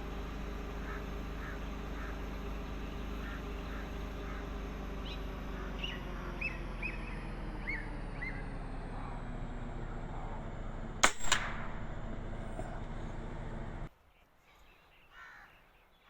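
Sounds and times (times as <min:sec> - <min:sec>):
bird calling: 0:00.0 - 0:09.2, 0:14.5 - 0:16.0
low background hum: 0:00.0 - 0:16.0.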